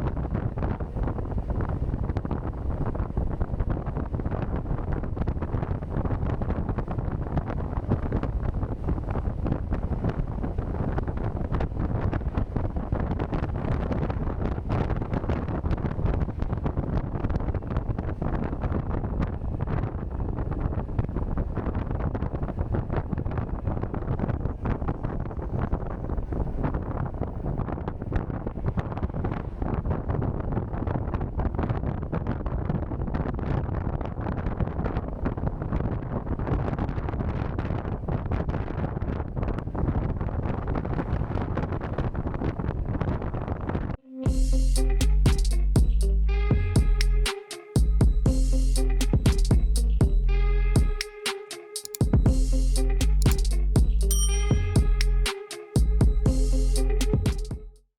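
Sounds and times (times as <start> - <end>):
wind buffeting microphone: 0.0 - 44.0.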